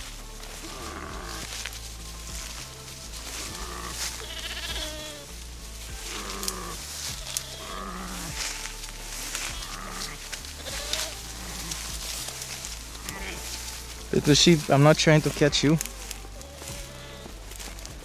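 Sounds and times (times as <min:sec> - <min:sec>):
sheep and goats bleating: 0:00.0 - 0:18.0.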